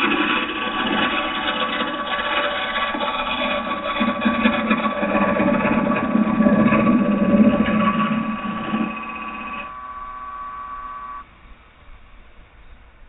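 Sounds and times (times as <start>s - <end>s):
lathe tool cutting wood: 0.0s - 11.2s
lathe motor whine: 0.0s - 11.3s.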